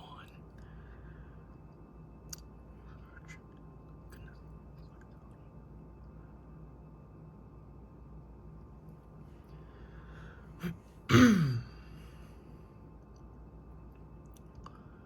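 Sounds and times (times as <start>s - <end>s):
low steady background: 0.0s - 15.0s.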